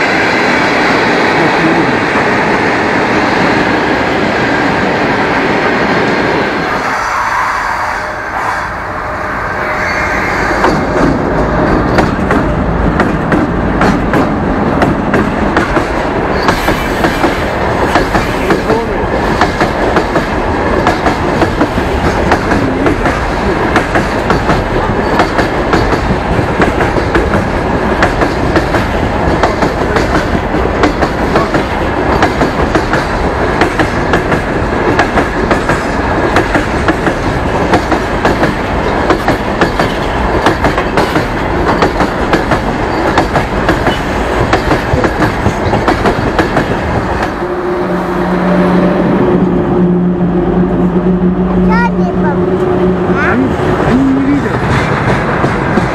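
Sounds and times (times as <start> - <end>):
freight train passing: 0.0 - 55.9
wheels clacking over rail joints: 10.6 - 47.4.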